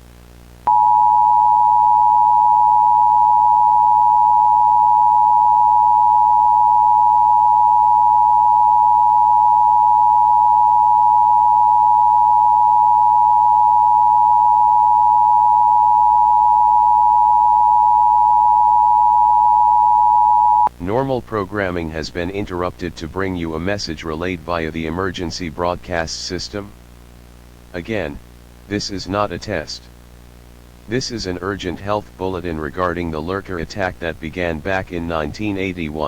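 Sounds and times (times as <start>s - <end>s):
faint static hum: 0.0s - 36.0s
two-tone attention signal: 0.7s - 20.7s.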